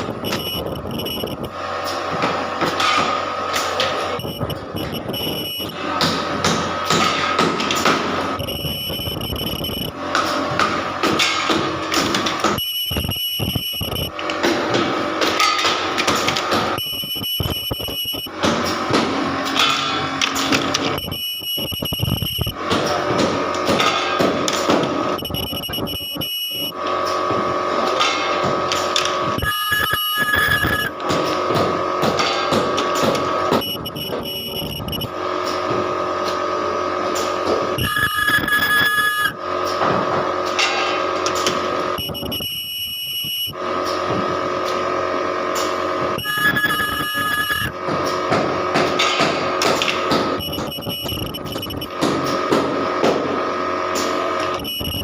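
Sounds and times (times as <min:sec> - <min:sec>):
high whining tones: 0:00.0 - 0:02.0, 0:04.1 - 0:05.9, 0:08.3 - 0:10.1, 0:12.4 - 0:14.2, 0:16.7 - 0:18.4, 0:19.9 - 0:22.6, 0:25.1 - 0:26.8, 0:29.3 - 0:31.0, 0:33.5 - 0:35.2, 0:37.8 - 0:39.4, 0:41.9 - 0:43.6, 0:46.1 - 0:47.8, 0:50.4 - 0:52.0, 0:54.4 - 0:55.0
machine running: 0:00.0 - 0:55.0
ultrasonic welder high whine: 0:00.0 - 0:55.0.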